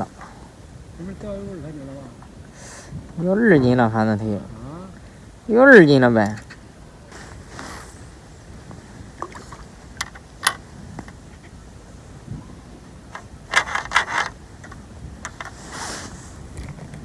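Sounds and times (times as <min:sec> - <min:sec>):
wind rumble on microphone: 0:00.0 - 0:17.0
fishing tackle clicking and scraping: 0:06.2 - 0:06.6, 0:07.2 - 0:11.6, 0:13.1 - 0:15.8.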